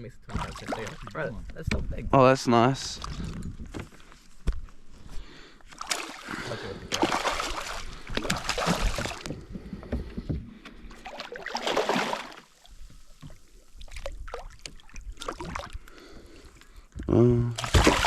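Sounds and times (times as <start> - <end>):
water splashing around boat: 0.3 - 1.2, 5.7 - 16.3, 17.6 - 18.0
light clicks and knocks on boat: 8.1 - 11.0
water rushes: 11.1 - 12.6.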